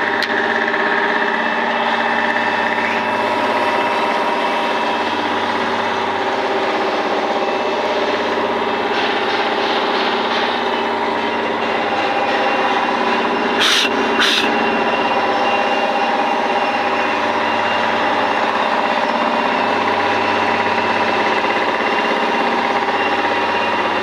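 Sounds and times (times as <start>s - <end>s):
brick-making machine humming: 0.0s - 24.0s
short hisses: 13.6s - 14.6s.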